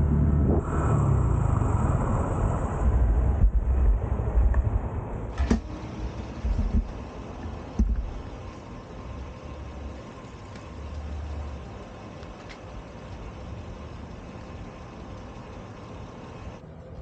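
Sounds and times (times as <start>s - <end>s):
wind on microphone: 0.0s - 5.6s
motorcycle engine running: 5.3s - 16.6s.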